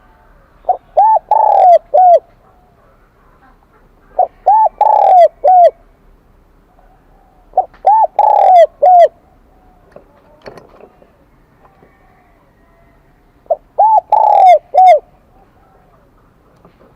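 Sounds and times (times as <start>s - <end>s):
dove cooing: 0.0s - 3.0s, 4.0s - 5.9s, 6.7s - 9.9s, 11.7s - 16.1s.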